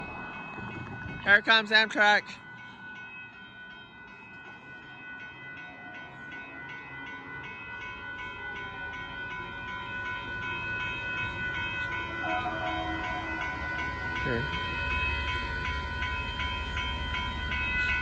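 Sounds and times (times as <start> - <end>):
passenger train rumbling: 0.0 - 18.0
railroad crossing bell ringing: 0.0 - 18.0.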